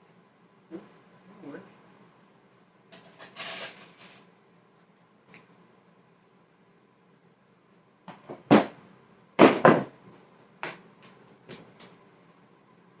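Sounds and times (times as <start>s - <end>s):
hard objects knocking: 9.4s - 10.0s.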